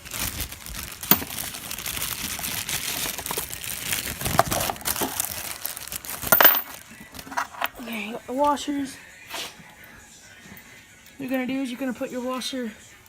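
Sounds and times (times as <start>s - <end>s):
rustling and crinkling handling noise: 0.0s - 7.9s.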